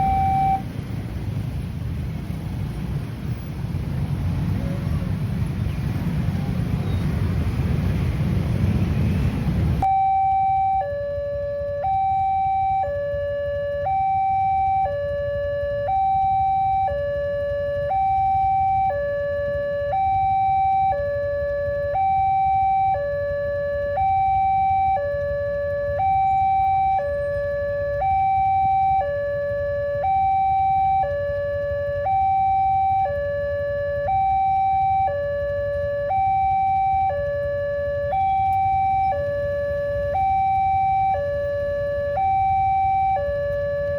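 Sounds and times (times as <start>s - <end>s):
two-tone level-crossing siren: 0.0s - 0.7s, 9.8s - 43.9s.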